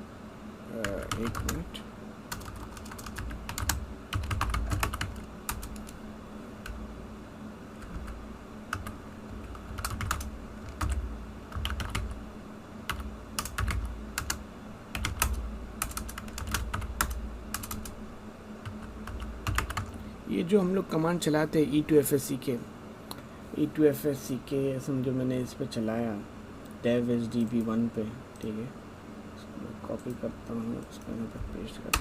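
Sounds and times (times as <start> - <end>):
faint steady hum: 0.0 - 32.0
typing on computer keyboard: 0.8 - 1.6, 2.3 - 5.9, 9.5 - 12.2, 12.9 - 14.4, 15.0 - 17.9, 18.6 - 20.0.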